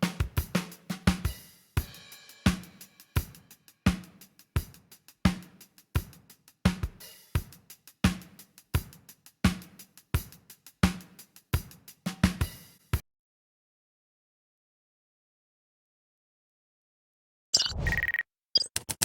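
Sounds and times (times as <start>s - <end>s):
drum kit beat: 0.0s - 13.0s.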